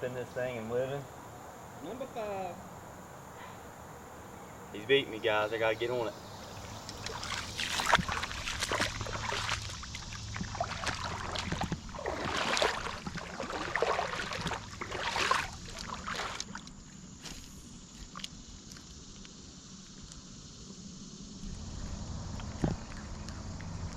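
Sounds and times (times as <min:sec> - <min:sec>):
creek water sloshing and splashing: 0:06.3 - 0:17.0.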